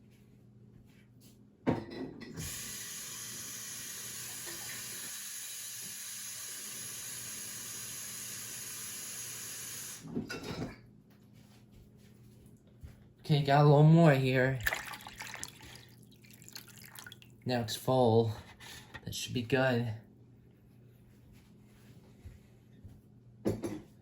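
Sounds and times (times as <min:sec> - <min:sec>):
water running from a tap: 0:02.4 - 0:10.0, 0:14.6 - 0:17.3.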